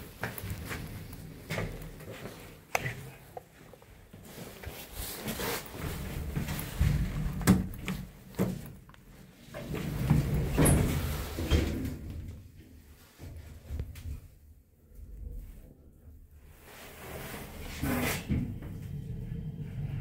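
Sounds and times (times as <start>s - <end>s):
low rumble: 18.4s - 20.0s.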